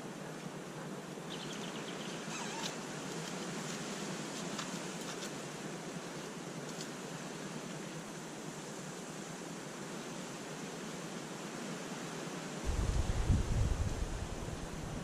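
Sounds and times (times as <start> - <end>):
steady rushing noise: 12.6 - 15.0.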